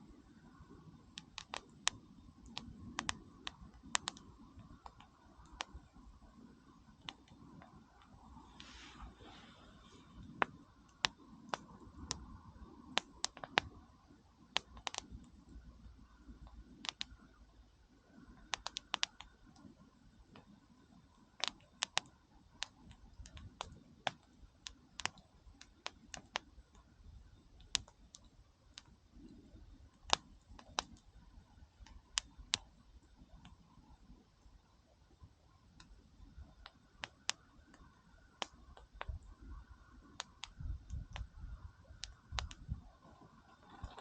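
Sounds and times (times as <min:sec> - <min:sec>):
faint low rumble: 0:00.0 - 0:44.0
campfire crackling: 0:00.6 - 0:13.8, 0:14.4 - 0:15.5, 0:20.3 - 0:44.0.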